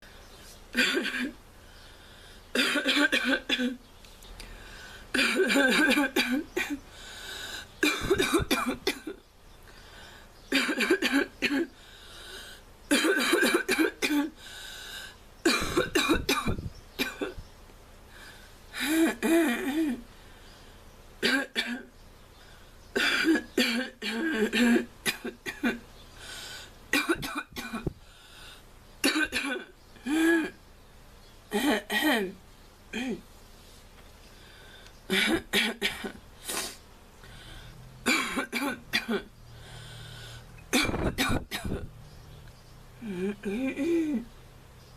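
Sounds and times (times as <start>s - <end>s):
girl coughing: 0.8s - 1.4s, 2.6s - 3.8s, 5.2s - 6.8s, 7.8s - 9.2s, 10.5s - 11.7s, 12.9s - 14.4s, 15.5s - 17.4s, 21.2s - 21.9s, 23.0s - 25.8s, 27.0s - 27.9s, 29.0s - 30.5s, 33.0s - 33.2s, 38.1s - 39.3s, 40.7s - 41.9s.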